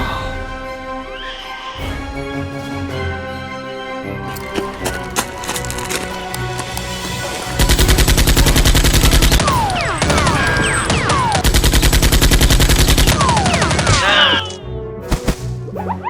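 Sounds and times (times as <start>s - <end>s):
rapid automatic gunfire: 7.6s - 13.9s.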